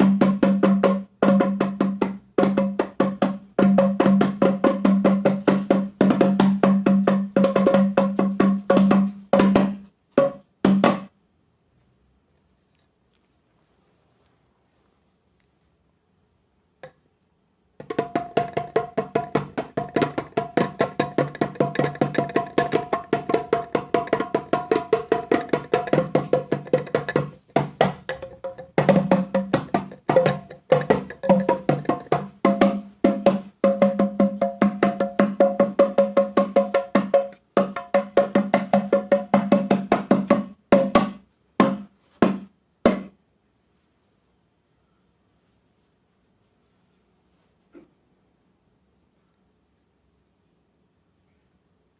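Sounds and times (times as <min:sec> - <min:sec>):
hand drums struck rhythmically: 0:00.0 - 0:11.1, 0:17.8 - 0:43.1.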